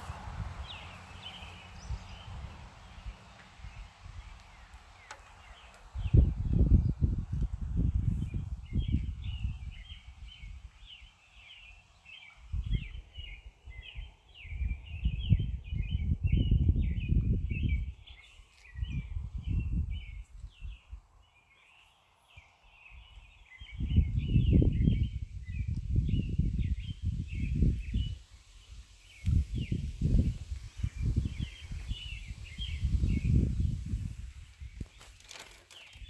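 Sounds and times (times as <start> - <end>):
birds chirping: 0.0 - 7.0, 8.0 - 36.0.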